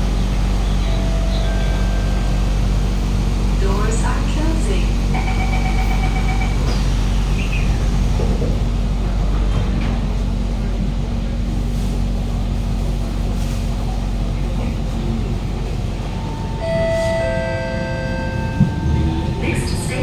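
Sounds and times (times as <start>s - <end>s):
train car hum and rumble: 0.0s - 20.0s
chime of held tones: 16.6s - 19.2s.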